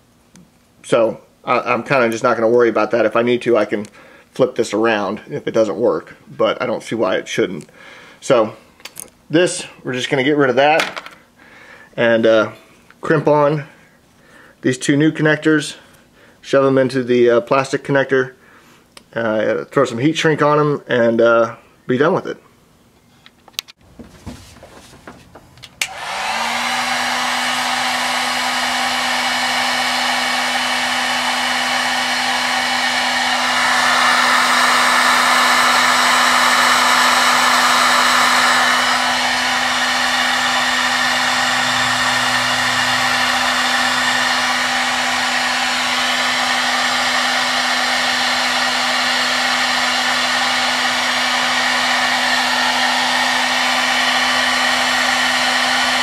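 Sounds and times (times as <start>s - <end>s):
hot-air blower running: 25.2s - 56.0s.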